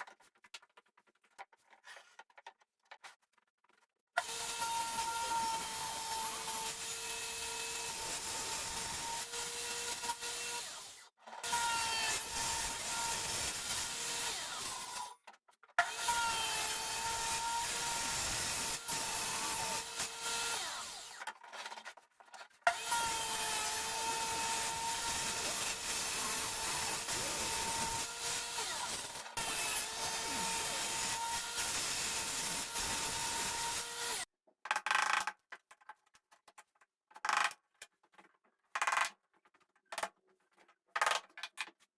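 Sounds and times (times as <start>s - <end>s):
power tool cutting wood: 4.2s - 15.2s, 15.8s - 21.3s, 22.7s - 34.3s.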